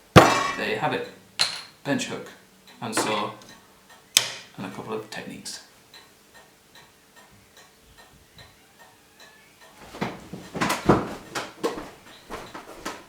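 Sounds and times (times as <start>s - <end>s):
faint steady ticking: 2.2s - 9.8s
objects knocking on workbench: 9.8s - 13.0s.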